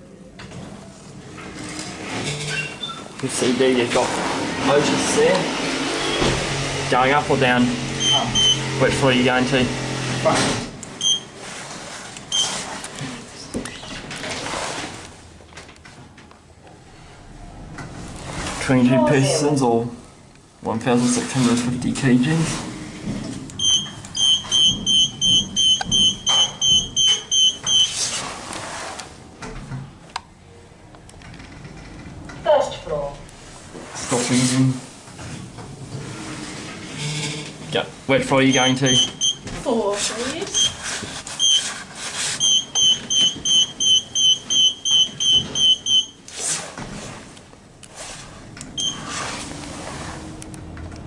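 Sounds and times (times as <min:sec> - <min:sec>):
sliding door swish: 0:01.4 - 0:06.9, 0:09.8 - 0:10.8, 0:11.4 - 0:15.2, 0:16.9 - 0:19.0, 0:21.0 - 0:23.5, 0:24.2 - 0:29.7, 0:33.3 - 0:37.6, 0:45.0 - 0:51.0
lift beeper short high beeps: 0:08.0 - 0:08.6, 0:23.6 - 0:27.9, 0:38.5 - 0:39.4, 0:42.4 - 0:46.2.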